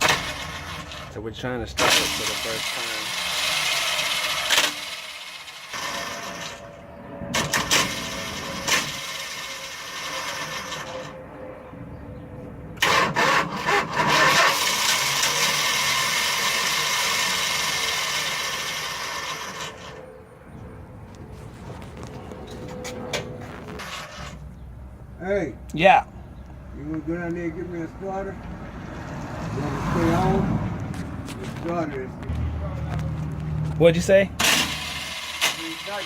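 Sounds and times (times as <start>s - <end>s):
starter motor whirring: 0.0s - 1.1s, 1.8s - 6.7s, 7.3s - 11.2s, 12.8s - 20.0s, 34.4s - 36.0s.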